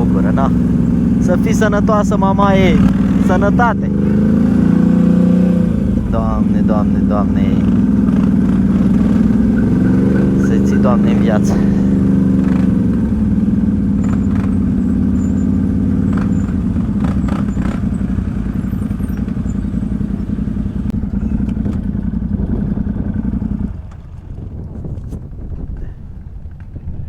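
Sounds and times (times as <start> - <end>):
atv engine running: 0.0 - 27.0.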